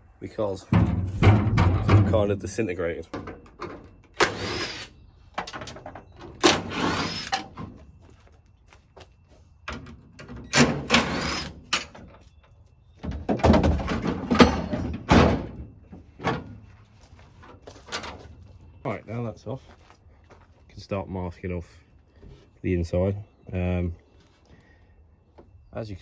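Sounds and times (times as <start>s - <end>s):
metallic rattles scrapes and knocks: 0.7s - 7.8s, 9.7s - 12.2s, 13.0s - 16.7s.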